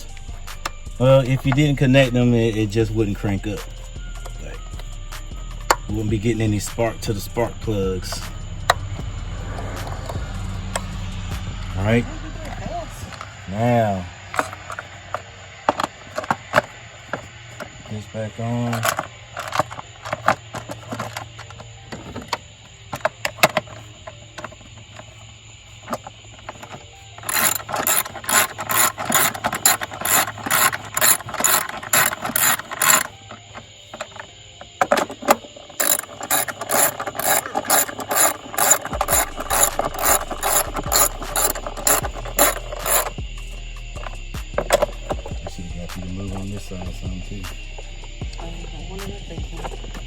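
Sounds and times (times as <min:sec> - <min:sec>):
socket ratchet clicking: 0:26.6 - 0:33.3, 0:34.8 - 0:43.2.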